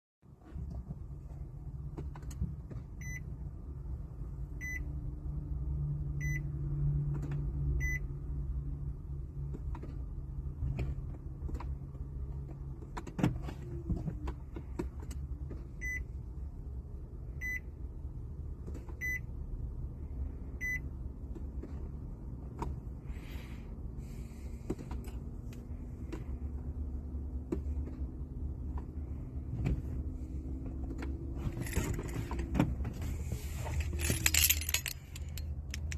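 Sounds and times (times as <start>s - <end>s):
car warning chime beeping: 3.0s - 3.3s, 4.6s - 4.9s, 6.2s - 6.5s, 15.8s - 16.1s, 17.3s - 17.8s, 19.0s - 19.3s, 20.6s - 20.9s
scattered clicks: 34.2s - 35.9s.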